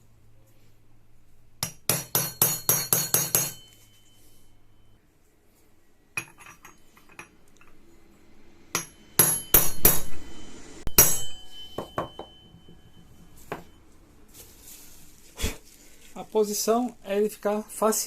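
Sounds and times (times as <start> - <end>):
hammer tapping metal tool: 1.6 - 4.2, 6.2 - 7.9, 8.7 - 10.3, 10.9 - 13.8.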